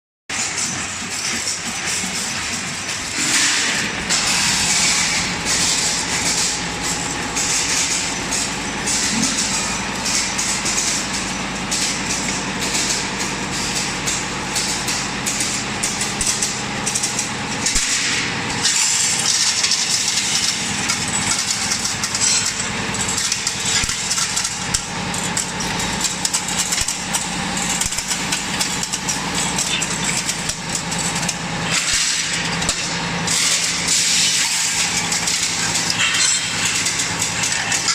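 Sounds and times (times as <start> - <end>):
machine clatter and clicking: 0.3 - 37.9
machinery humming: 0.3 - 37.9.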